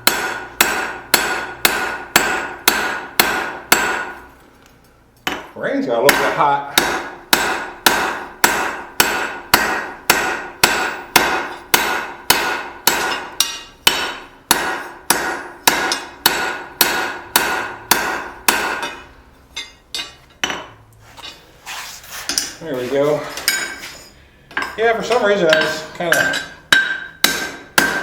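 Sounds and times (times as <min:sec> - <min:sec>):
hammer striking steel on anvil: 0:00.0 - 0:04.2, 0:05.2 - 0:21.4, 0:23.4 - 0:28.0.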